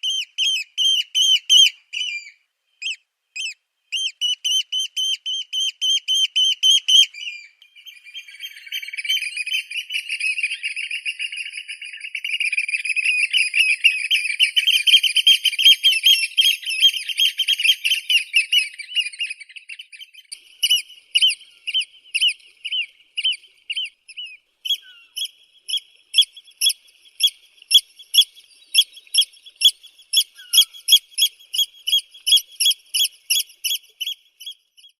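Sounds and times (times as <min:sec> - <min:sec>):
oystercatchers piping trill: 0:20.3 - 0:35.0.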